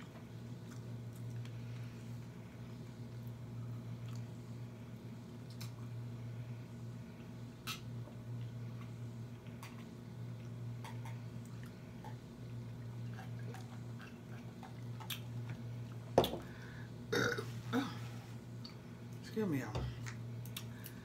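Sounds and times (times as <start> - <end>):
chewing and mouth smacks: 0.6 - 1.6, 4.0 - 4.3, 5.4 - 5.9, 7.6 - 16.0, 20.1 - 21.0.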